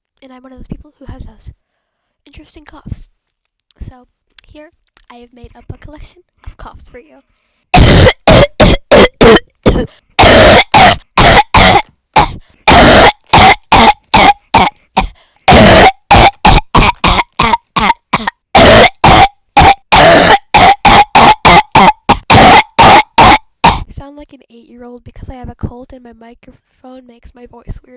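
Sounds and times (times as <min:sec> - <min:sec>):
person coughing: 0:07.8 - 0:24.0.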